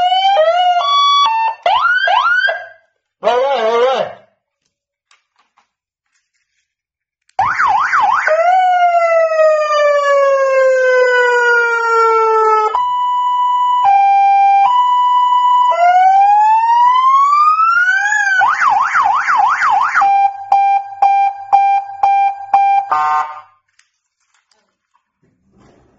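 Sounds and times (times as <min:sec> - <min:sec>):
electronic police siren: 0:00.0 - 0:03.4, 0:07.4 - 0:23.6.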